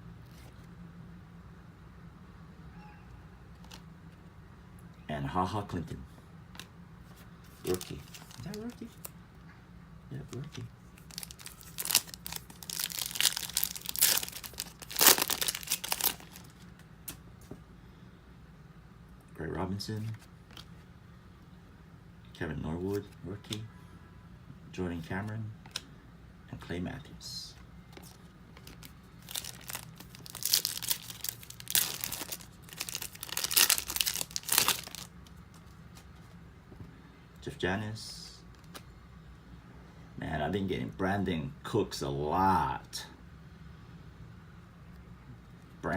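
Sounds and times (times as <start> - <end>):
foil wrapper tearing and crinkling: 7.6 - 9.1, 11.0 - 16.6, 28.0 - 35.1.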